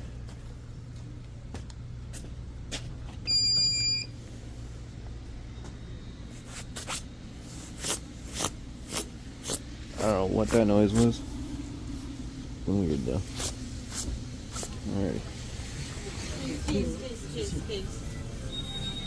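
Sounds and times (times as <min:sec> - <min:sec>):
low electrical hum: 0:00.0 - 0:19.0
loud electronic beep: 0:18.5 - 0:19.0.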